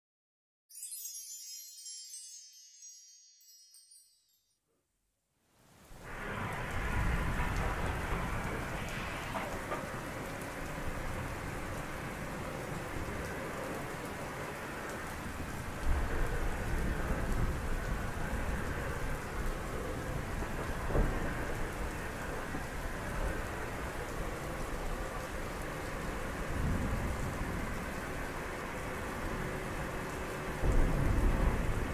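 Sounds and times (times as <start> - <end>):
heavy rain: 5.6 - 31.9
thunder rumbling: 6.1 - 11.5, 15.3 - 24.3, 30.5 - 31.9.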